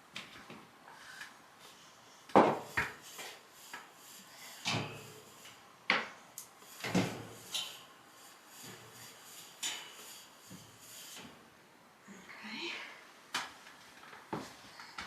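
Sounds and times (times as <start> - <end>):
hard knocks and scrapes on metal vent: 6.7 - 11.4.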